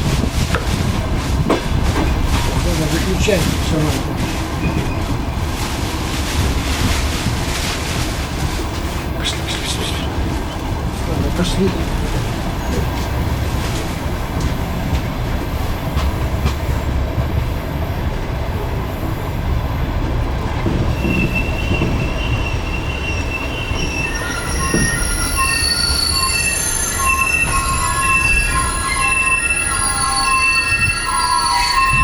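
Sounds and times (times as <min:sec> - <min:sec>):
train coaches rumbling by: 0:00.0 - 0:32.0
wheel and brake squealing: 0:20.7 - 0:32.0.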